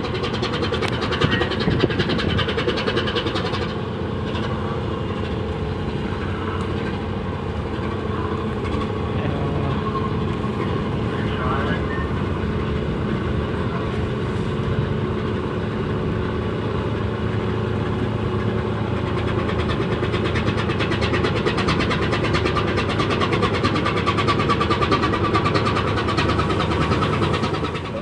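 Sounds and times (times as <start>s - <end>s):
diesel engine deep hum: 0.0s - 28.0s
mechanical whine: 0.0s - 28.0s.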